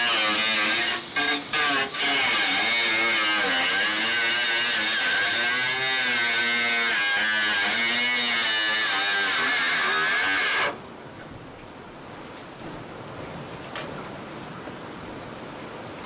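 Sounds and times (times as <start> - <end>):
power tool whine cutting: 0.0 - 10.8.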